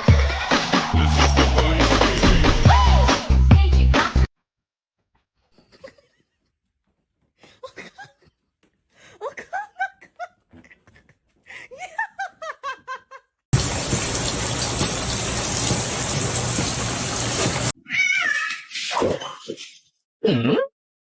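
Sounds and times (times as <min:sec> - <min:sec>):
person giggling: 0:05.6 - 0:06.4, 0:07.4 - 0:13.4.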